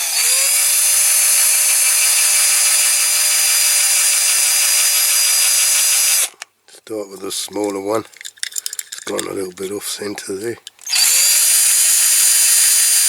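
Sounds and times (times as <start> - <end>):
electric drill whining: 0.0 - 6.4, 10.8 - 13.0.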